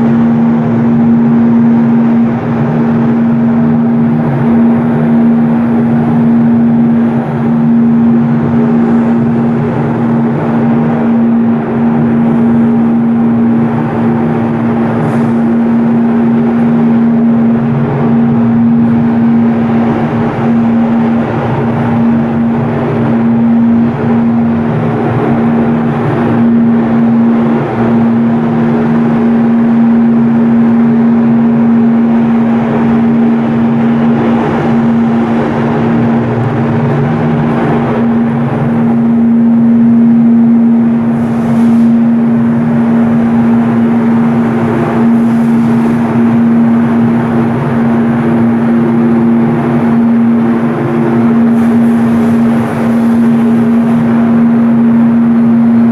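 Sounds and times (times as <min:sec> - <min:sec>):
ship diesel engine drone: 0:00.0 - 0:55.9.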